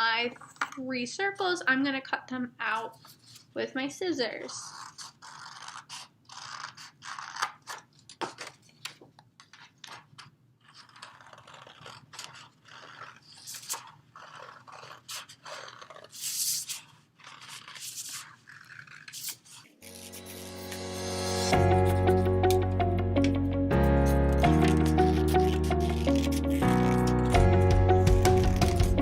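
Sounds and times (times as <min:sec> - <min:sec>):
scissors snipping paper: 0:04.3 - 0:22.6, 0:24.4 - 0:29.0
paper rustling: 0:04.6 - 0:21.5, 0:24.4 - 0:29.0.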